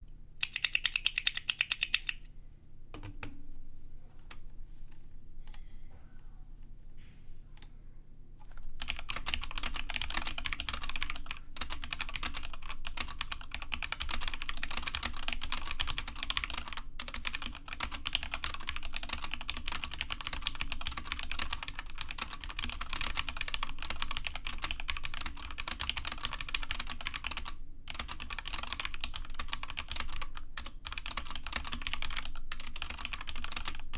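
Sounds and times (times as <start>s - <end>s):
mechanical keyboard typing: 0.4s - 2.2s, 8.8s - 33.9s.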